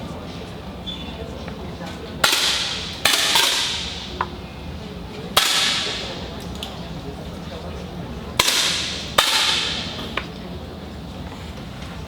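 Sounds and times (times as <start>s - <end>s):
air rifle shots: 2.2s - 4.2s, 5.4s - 6.2s, 8.4s - 10.0s.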